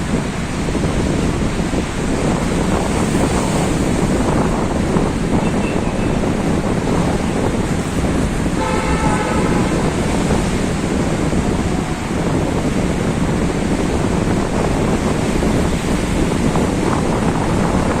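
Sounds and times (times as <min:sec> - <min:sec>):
sea waves: 0:00.0 - 0:18.0
wind buffeting microphone: 0:00.0 - 0:18.0
horn: 0:08.6 - 0:10.2.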